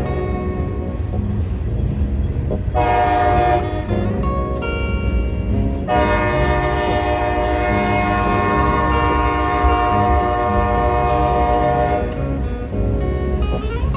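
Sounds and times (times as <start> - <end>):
locomotive air horn blowing chord: 2.7 - 4.7, 5.4 - 12.8.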